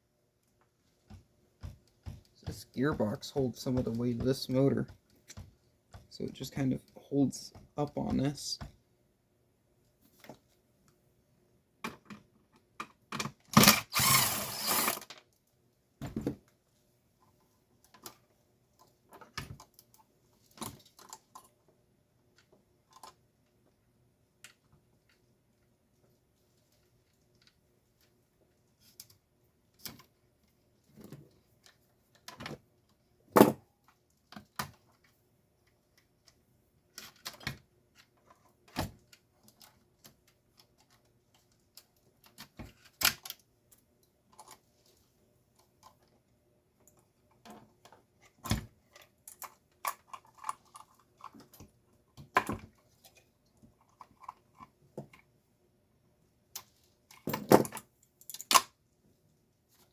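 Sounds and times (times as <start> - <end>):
clicks and knocks of small parts: 33.4 - 44.7, 46.8 - 55.3, 56.5 - 58.8.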